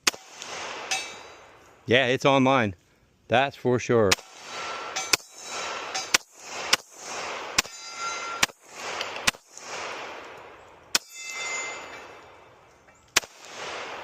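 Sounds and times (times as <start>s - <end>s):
pistol shots with echo: 0.0s - 1.6s, 4.1s - 12.6s, 13.2s - 14.0s.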